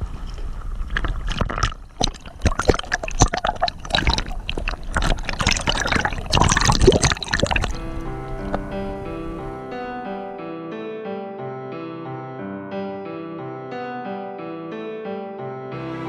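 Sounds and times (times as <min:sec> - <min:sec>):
water splashing beside boat: 0:00.0 - 0:09.7.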